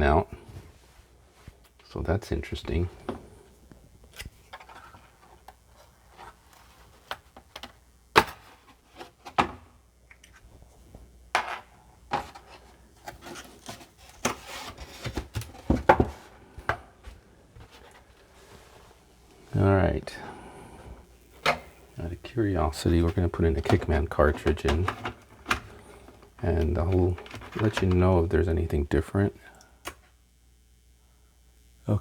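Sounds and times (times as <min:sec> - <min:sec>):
hands rubbing computer parts: 0:04.0 - 0:09.4, 0:10.1 - 0:19.7, 0:20.9 - 0:28.2
computer parts clicking and knocking: 0:23.6 - 0:28.0.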